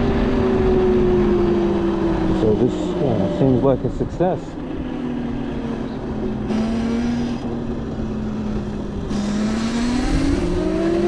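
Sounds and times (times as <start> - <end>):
wind noise: 0.0 - 5.5, 7.8 - 11.0
road noise: 0.0 - 11.0
electric motor whine: 4.8 - 11.0.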